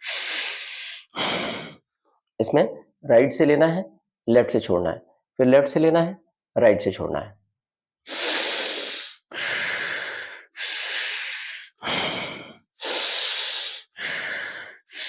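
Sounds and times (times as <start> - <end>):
nasal breathing: 0.0 - 1.9, 8.1 - 15.0.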